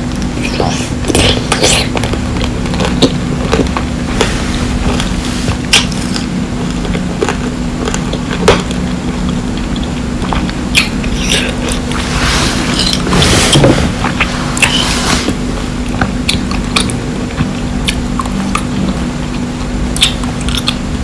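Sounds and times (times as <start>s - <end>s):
candy crunching: 0.0s - 20.8s
steady low hum: 0.0s - 21.0s
soft chewing: 0.1s - 20.8s.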